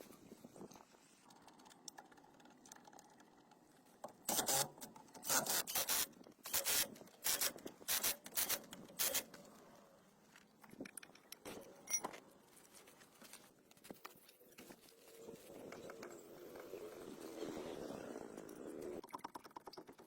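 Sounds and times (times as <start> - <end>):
faint handling noise: 9.3 - 15.6.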